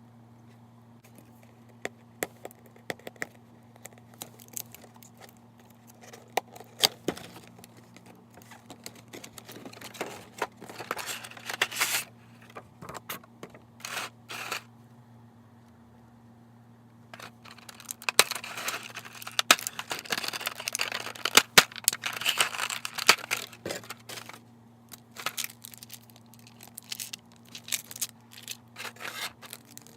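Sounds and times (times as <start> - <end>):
steady low hum: 0.0 - 29.9
packaging crinkling and rustling: 3.9 - 13.0, 17.2 - 29.9.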